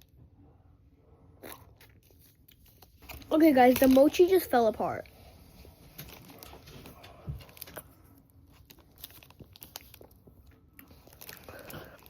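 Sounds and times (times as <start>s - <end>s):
plastic packaging crinkling: 2.2s - 5.0s, 5.9s - 7.8s, 8.4s - 12.0s.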